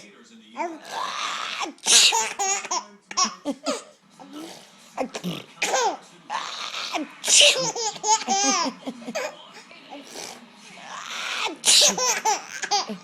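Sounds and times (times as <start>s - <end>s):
baby laughing: 0.6s - 4.0s, 5.0s - 9.6s, 10.8s - 13.0s
adult fake sneezing: 0.8s - 2.4s, 3.6s - 7.9s, 10.0s - 13.0s.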